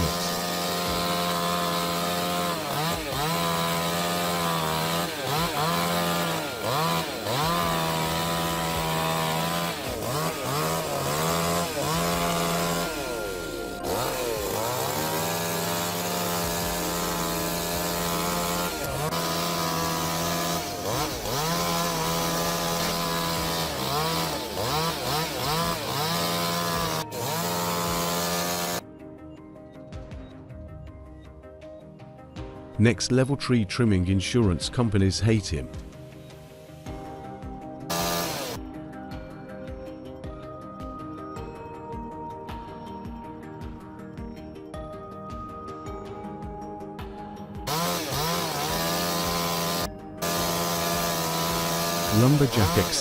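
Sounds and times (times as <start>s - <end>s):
chainsaw cutting wood: 0.0s - 28.8s, 37.9s - 38.7s, 47.7s - 53.0s.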